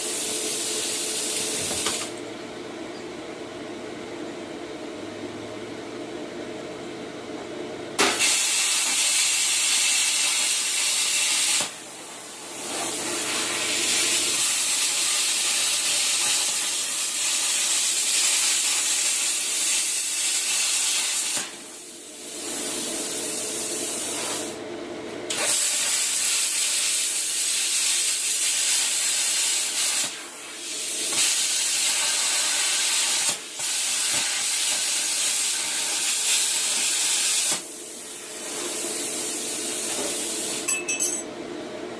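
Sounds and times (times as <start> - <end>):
plasma torch hissing: 0.0 - 2.2, 8.0 - 24.6, 25.3 - 40.7
machine hum: 0.7 - 8.0.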